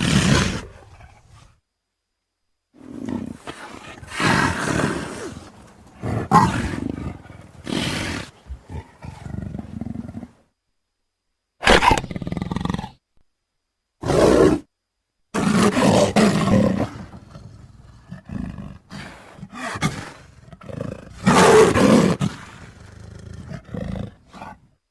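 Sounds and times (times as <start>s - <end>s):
leopard roaring: 0.0s - 1.5s, 2.8s - 10.4s, 14.0s - 14.7s, 15.3s - 24.7s.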